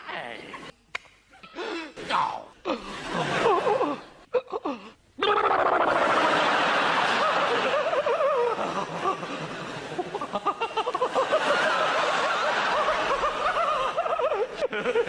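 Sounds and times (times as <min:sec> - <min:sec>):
audience laughing: 0:02.8 - 0:04.2, 0:05.2 - 0:15.0.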